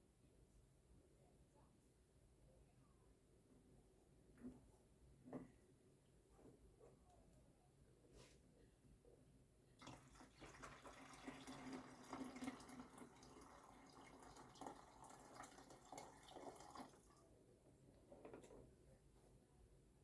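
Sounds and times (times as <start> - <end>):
water pouring into a tank: 9.8 - 17.2.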